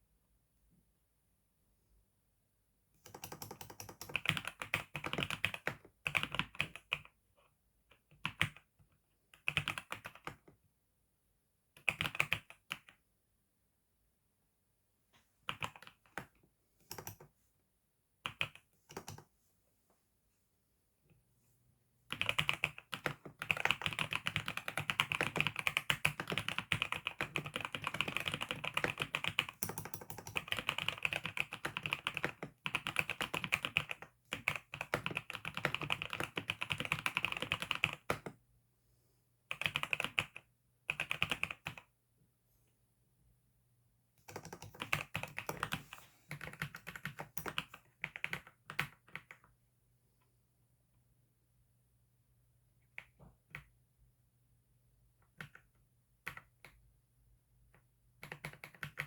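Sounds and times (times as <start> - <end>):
computer keyboard typing: 3.0 - 7.0, 9.4 - 10.4, 11.8 - 12.9, 15.5 - 16.3, 16.9 - 17.3, 18.2 - 19.2, 22.1 - 38.3, 39.5 - 41.9, 44.2 - 49.5, 55.2 - 56.8, 58.2 - 59.0.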